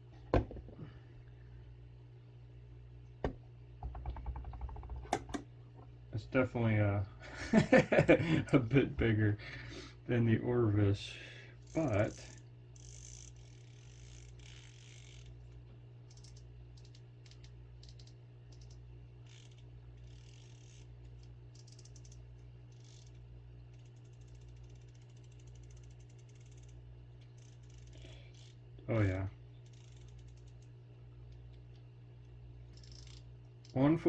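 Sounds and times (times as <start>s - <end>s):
steady low hum: 0.0s - 34.0s
fishing reel ratcheting clicks: 11.6s - 15.5s, 16.1s - 28.6s, 29.6s - 30.7s, 32.7s - 33.8s.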